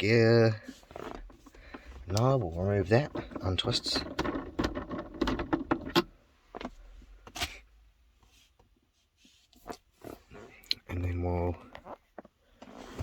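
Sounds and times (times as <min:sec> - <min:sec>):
plastic gear knob clicking and rattling: 0:00.9 - 0:06.7.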